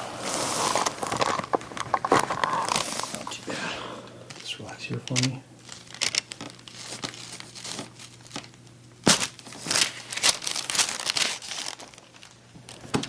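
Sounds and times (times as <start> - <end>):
rustling and crinkling: 0.0 - 3.5, 4.3 - 13.0
neck joint cracking: 0.5 - 7.2.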